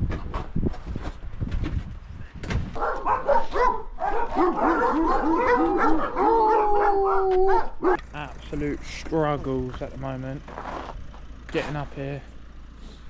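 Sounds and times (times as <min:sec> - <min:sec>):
dog whining: 0:02.8 - 0:08.0
dog yipping: 0:02.8 - 0:08.0.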